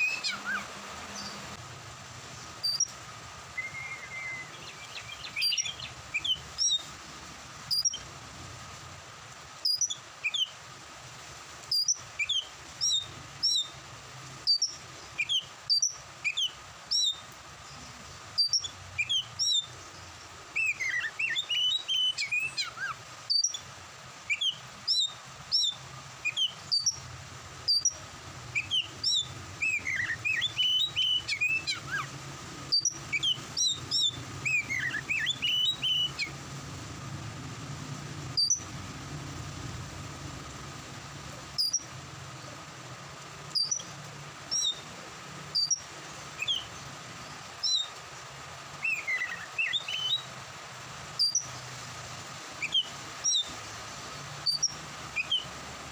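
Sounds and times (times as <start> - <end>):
songbird whistling and chirping: 0.0 - 1.6, 2.4 - 6.9, 7.7 - 8.1, 9.6 - 10.6, 11.7 - 13.8, 14.4 - 17.3, 18.4 - 19.9, 20.5 - 23.6, 24.3 - 27.1, 27.7 - 36.4, 38.3 - 38.7, 41.6 - 41.9, 43.5 - 44.9, 45.5 - 48.0, 48.8 - 50.4, 51.2 - 51.7, 52.6 - 53.6, 54.4 - 55.6
background hiss: 0.0 - 55.9.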